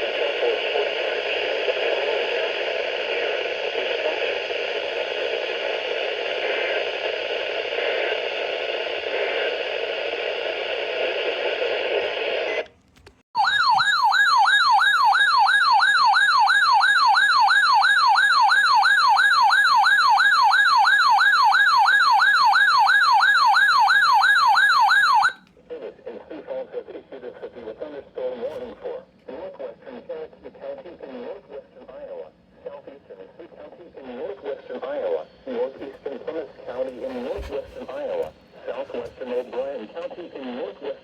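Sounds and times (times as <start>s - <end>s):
radio static hiss: 0.0s - 12.7s, 25.7s - 41.0s
emergency alert siren warbling: 13.4s - 25.4s.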